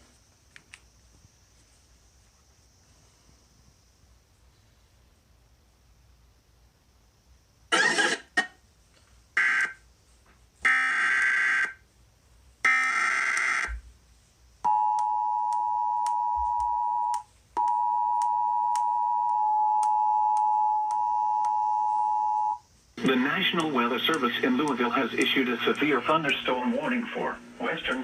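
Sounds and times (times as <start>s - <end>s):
faint regular ticks: 0.1s - 2.6s, 23.0s - 26.4s.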